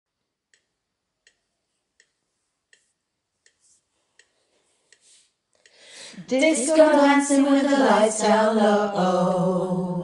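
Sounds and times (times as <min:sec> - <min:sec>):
faint metronome clicks: 0:00.5 - 0:05.8.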